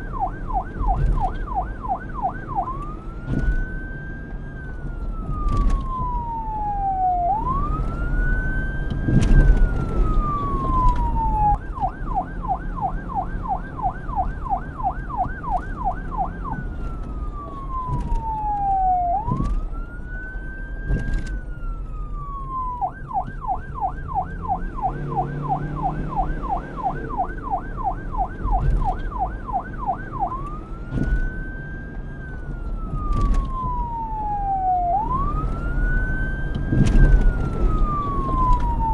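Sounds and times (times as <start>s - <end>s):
electronic police siren: 0.0s - 38.9s.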